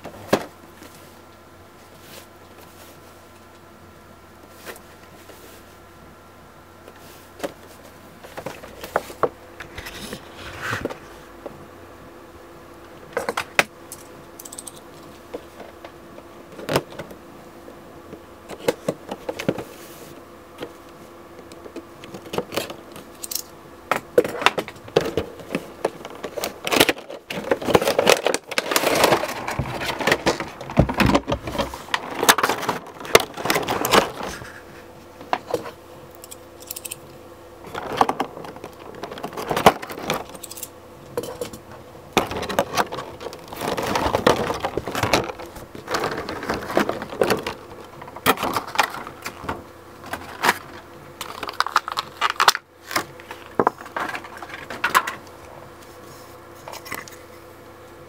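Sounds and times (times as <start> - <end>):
packaging rustling and crinkling: 24.3 - 35.8, 42.2 - 55.2.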